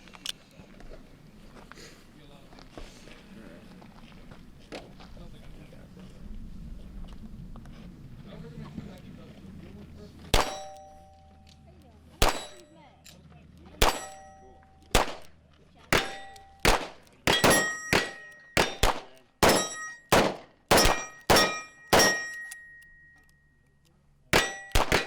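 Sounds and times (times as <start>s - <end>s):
bullets clanging on steel targets: 10.3s - 11.6s, 12.2s - 15.3s, 15.9s - 23.4s, 24.4s - 25.0s.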